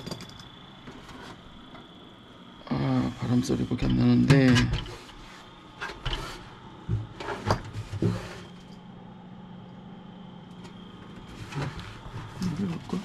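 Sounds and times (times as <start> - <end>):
handling knocks and clicks: 0.0 - 1.9
computer fan humming with whine: 0.0 - 13.0.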